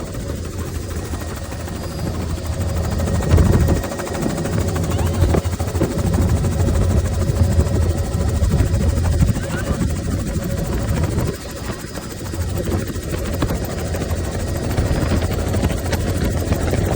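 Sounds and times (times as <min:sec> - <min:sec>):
helicopter rotor and engine: 0:00.0 - 0:16.9.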